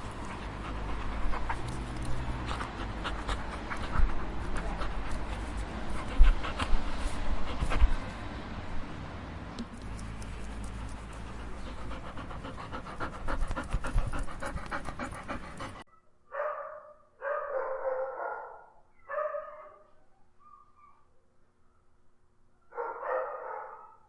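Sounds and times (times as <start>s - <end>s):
dog panting: 0.0s - 8.3s, 10.0s - 15.9s.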